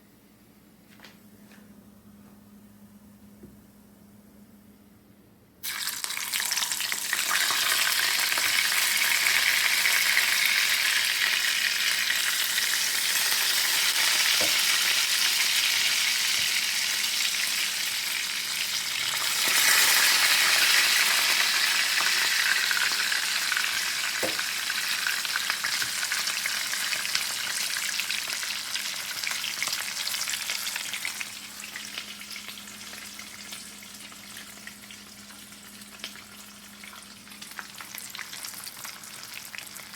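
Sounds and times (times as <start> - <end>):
food sizzling in hot oil: 5.6 - 39.9.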